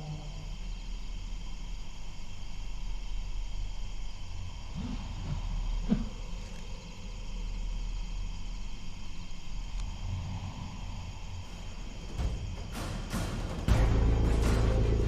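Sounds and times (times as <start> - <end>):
insects chirring: 0.0 - 15.0
low rumble: 9.8 - 15.0.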